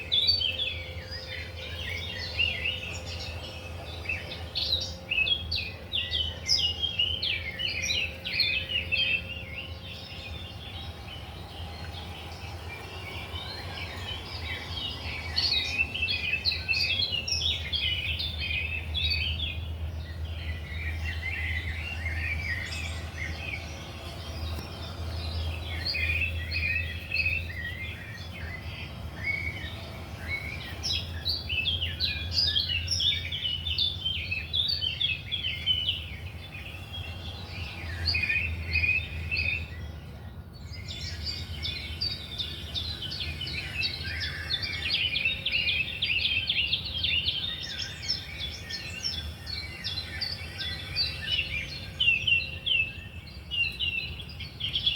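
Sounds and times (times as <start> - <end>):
small birds chirping: 0.0 - 54.9.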